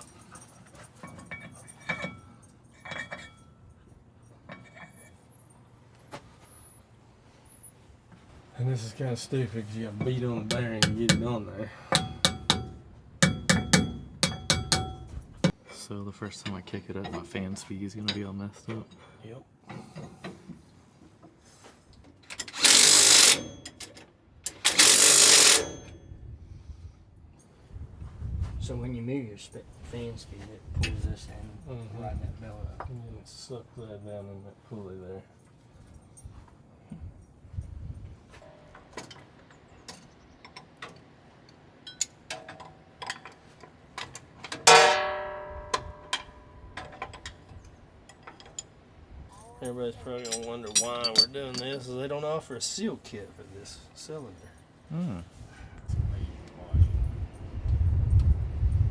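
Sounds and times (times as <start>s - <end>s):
metal tools clicking and tapping: 0.0s - 5.2s, 10.0s - 15.6s, 22.3s - 26.0s, 39.9s - 48.8s, 49.4s - 51.9s
tool clicks: 22.4s - 23.8s, 24.5s - 25.9s, 50.4s - 51.8s
impact wrench running: 22.5s - 23.6s, 24.5s - 25.9s
loud metallic clang: 44.7s - 46.6s.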